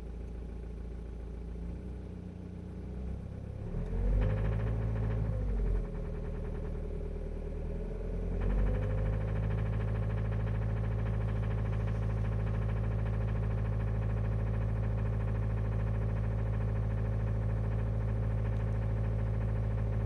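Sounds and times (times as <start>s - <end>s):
car engine idling: 0.0s - 20.0s
fast engine ticking: 4.0s - 20.0s.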